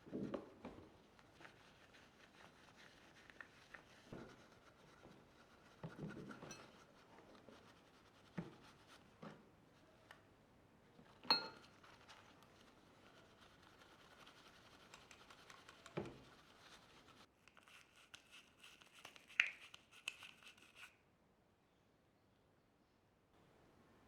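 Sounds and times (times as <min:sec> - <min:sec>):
faint scratching: 0:11.6 - 0:20.9.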